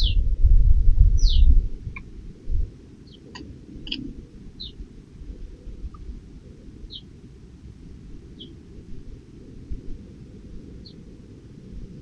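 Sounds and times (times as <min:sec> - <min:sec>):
low rumble: 0:00.0 - 0:02.7
small sharp clicks: 0:03.3 - 0:04.1.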